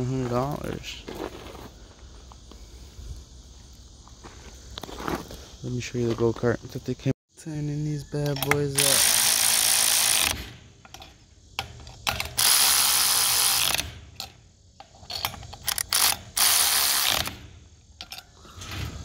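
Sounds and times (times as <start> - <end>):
metal clicks and knocks: 10.8 - 12.4, 14.1 - 16.1
power tool running: 12.4 - 13.8, 15.8 - 17.3.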